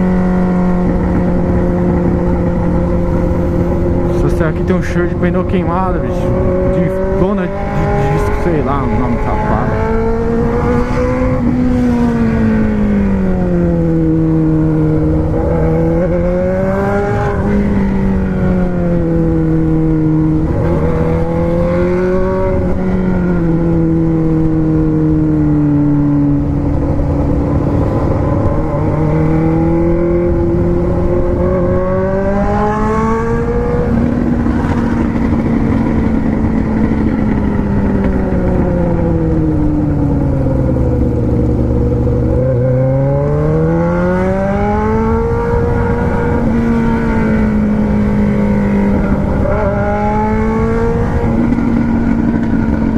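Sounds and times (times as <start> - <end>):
engine revving: 0.0 - 52.9.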